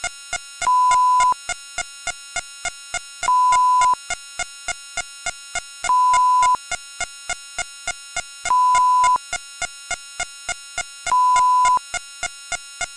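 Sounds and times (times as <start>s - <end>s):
loud steady beep: 0.6s - 1.4s, 3.2s - 4.0s, 5.9s - 6.6s, 8.5s - 9.2s, 11.1s - 11.8s.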